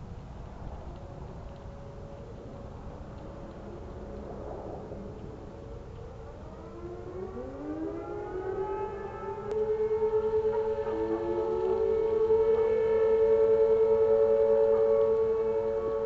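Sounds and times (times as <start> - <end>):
outdoor warning sirens winding up: 0.5 - 16.0.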